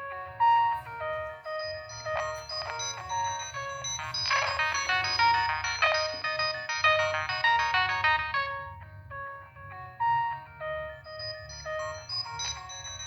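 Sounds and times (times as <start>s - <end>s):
polyphonic phone ringtone: 1.2s - 8.8s, 11.2s - 13.0s.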